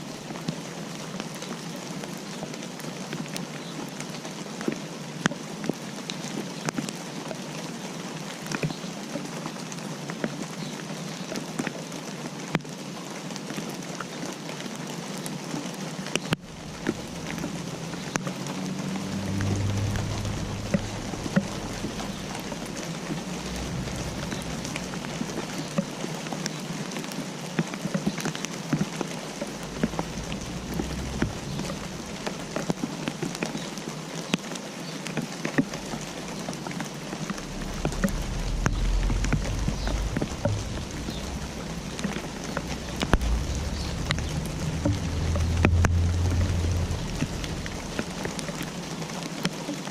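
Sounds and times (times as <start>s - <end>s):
rain on a hard surface: 0.0s - 49.9s
low rumble: 16.4s - 26.7s, 28.8s - 34.1s, 35.6s - 49.3s.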